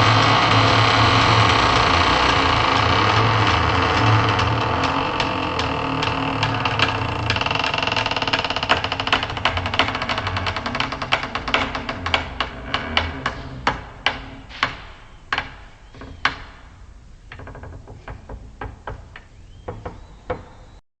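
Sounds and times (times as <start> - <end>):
low drone: 0.0 - 14.4
door rattling: 0.0 - 20.6
wooden door knocking: 17.3 - 20.8.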